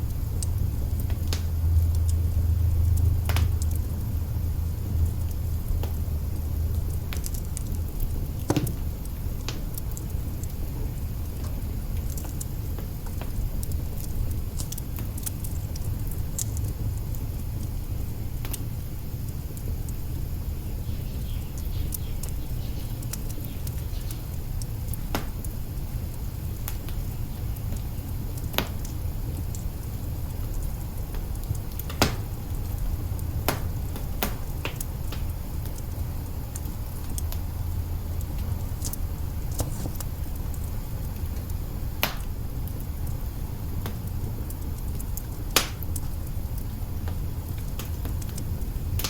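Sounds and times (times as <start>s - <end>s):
fire crackling and popping: 0.0s - 49.0s
wood fire flames rumbling: 0.0s - 49.0s.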